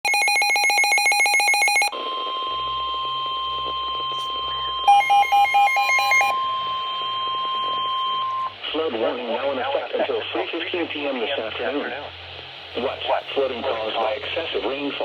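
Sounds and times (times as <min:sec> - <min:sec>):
rapid pulsing electronic beep: 0:00.1 - 0:08.6
long steady attention tone: 0:00.1 - 0:08.9.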